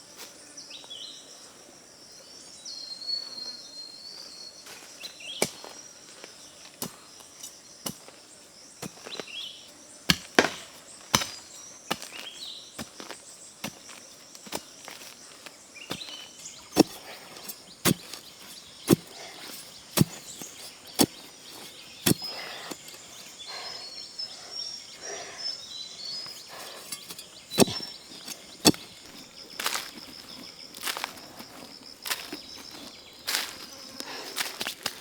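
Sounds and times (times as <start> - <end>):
small birds chirping: 2.5 - 10.1, 10.7 - 35.0
blade chopping: 15.9 - 23.2, 26.3 - 30.0.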